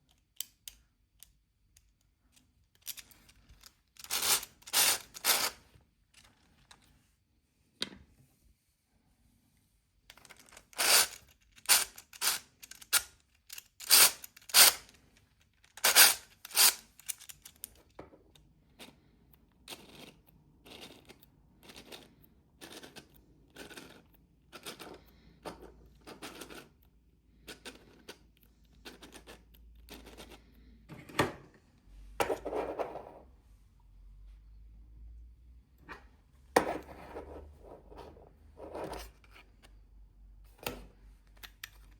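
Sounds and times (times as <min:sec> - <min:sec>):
plastic parts clicking and knocking: 0:10.1 - 0:19.0.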